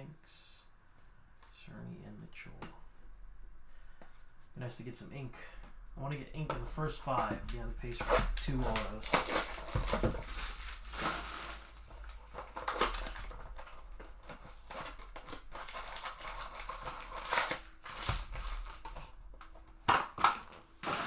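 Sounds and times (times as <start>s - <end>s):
card packaging rustling and crinkling: 6.4s - 21.0s.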